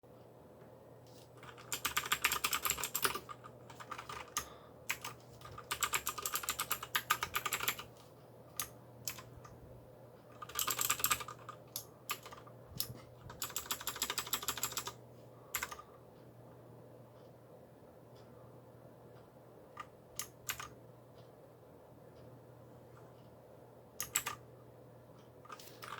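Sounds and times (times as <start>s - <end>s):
clicky mechanical keyboard typing: 1.1s - 7.9s, 8.6s - 9.6s, 10.3s - 15.9s, 19.8s - 20.8s, 24.0s - 24.4s, 25.5s - 25.9s.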